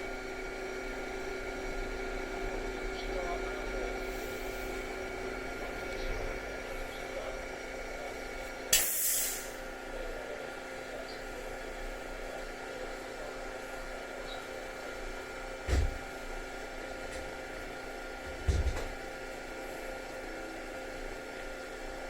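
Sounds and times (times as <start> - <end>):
electric train equipment humming: 0.0 - 22.0
compressed air hiss: 8.8 - 9.6.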